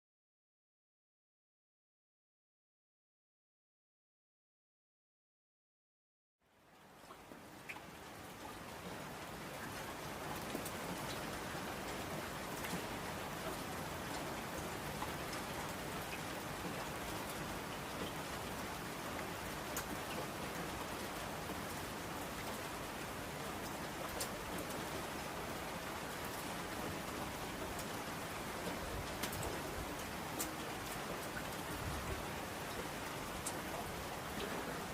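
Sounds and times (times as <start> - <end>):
rain on window glass: 6.4 - 34.9.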